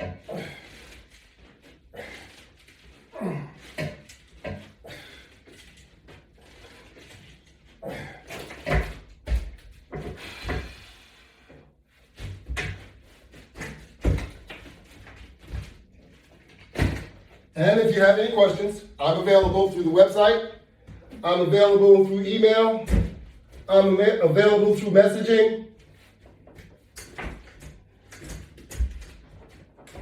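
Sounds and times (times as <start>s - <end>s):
exercise equipment knocking and thudding: 0.0s - 0.6s, 3.6s - 5.1s, 7.8s - 10.9s, 12.1s - 17.5s, 22.8s - 23.7s, 26.3s - 30.0s.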